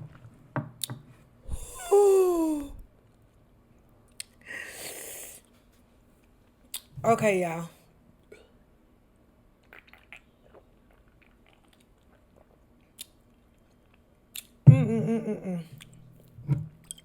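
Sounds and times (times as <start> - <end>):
woman's wordless vocal sound: 1.5 - 2.8.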